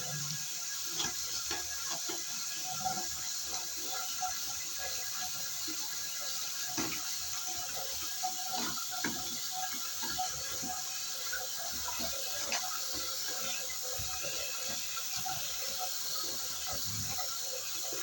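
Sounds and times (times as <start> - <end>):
water running and splashing: 0.0 - 18.0
small knocks and spatters: 0.1 - 4.4, 5.6 - 18.0.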